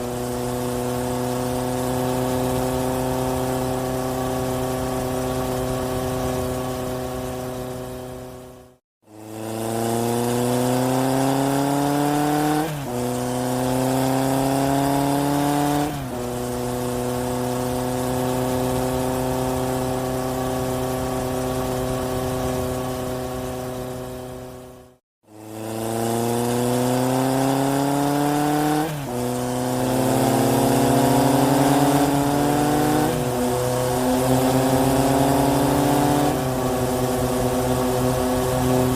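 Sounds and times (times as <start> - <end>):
vehicle engine accelerating: 0.0 - 38.9.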